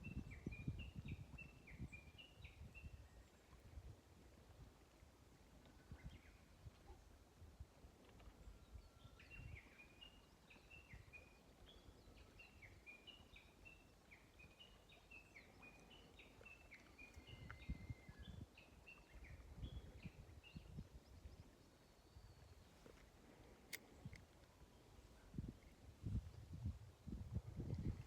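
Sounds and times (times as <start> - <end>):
songbird chirping: 8.0 - 26.6.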